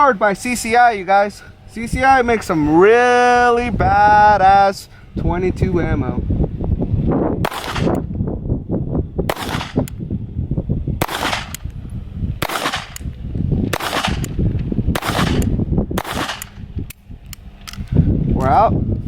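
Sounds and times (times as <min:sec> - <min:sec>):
pistol shots: 0:07.4 - 0:08.0, 0:09.3 - 0:09.9, 0:11.0 - 0:11.6, 0:12.4 - 0:13.1, 0:13.7 - 0:16.6.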